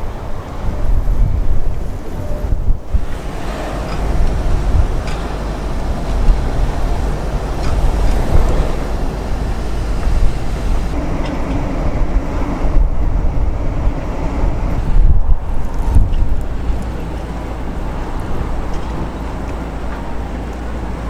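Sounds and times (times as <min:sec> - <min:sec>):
road traffic noise: 0:00.0 - 0:21.0
wind buffeting microphone: 0:00.0 - 0:21.0
vehicle low hum: 0:02.4 - 0:21.0.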